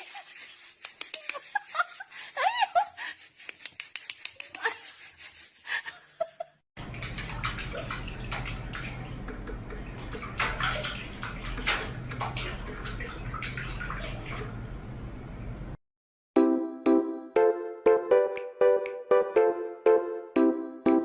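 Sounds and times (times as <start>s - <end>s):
water running and splashing: 6.8s - 14.7s.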